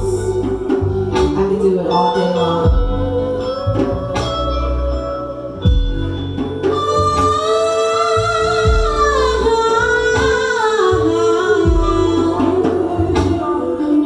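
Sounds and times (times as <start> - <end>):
kick drum beat: 2.7 - 3.2, 5.7 - 6.2, 8.7 - 9.2, 11.7 - 12.1.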